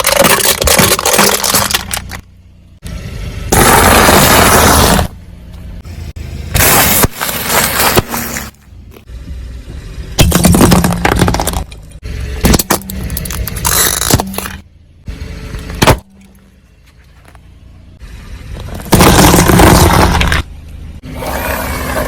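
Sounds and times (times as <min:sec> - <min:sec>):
tyres crunching objects: 0:00.0 - 0:02.3, 0:03.5 - 0:05.2, 0:06.5 - 0:09.1, 0:10.2 - 0:14.6, 0:18.5 - 0:20.6
car low hum: 0:00.0 - 0:22.0.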